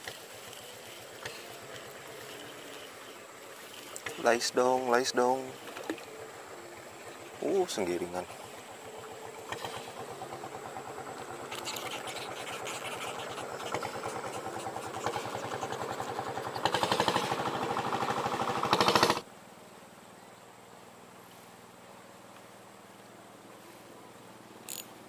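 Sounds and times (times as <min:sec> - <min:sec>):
small engine puttering: 0:00.0 - 0:19.2.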